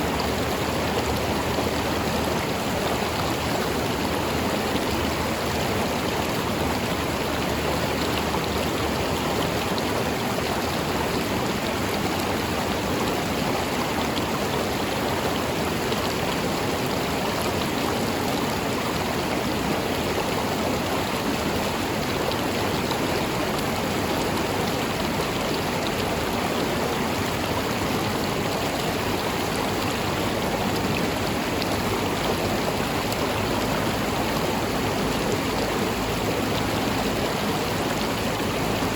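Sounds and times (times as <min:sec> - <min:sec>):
river flowing over rocks: 0:00.0 - 0:38.9.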